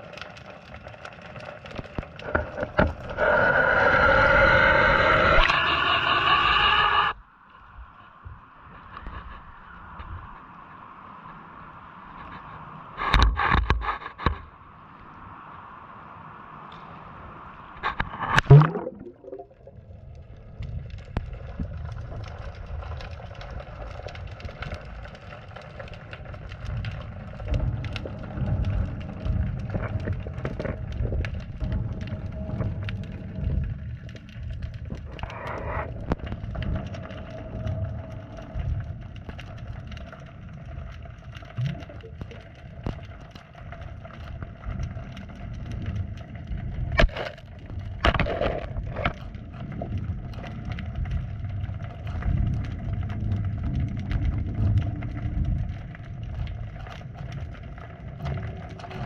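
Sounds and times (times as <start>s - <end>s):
muffled underwater rumble: 0.0s - 14.6s, 17.4s - 59.0s
underwater clicks and knocks: 1.7s - 3.3s, 17.8s - 19.6s, 27.4s - 40.1s, 41.4s - 43.1s, 46.7s - 50.4s.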